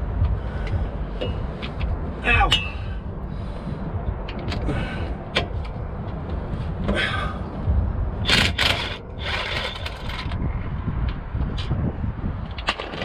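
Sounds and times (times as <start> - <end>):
low rumble: 0.0 - 13.0
knocks and scrapes: 8.2 - 13.0.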